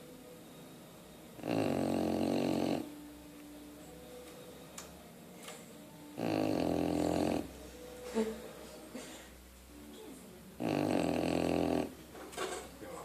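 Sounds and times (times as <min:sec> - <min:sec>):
person snoring: 0:01.4 - 0:02.9, 0:06.2 - 0:07.5, 0:10.6 - 0:11.9.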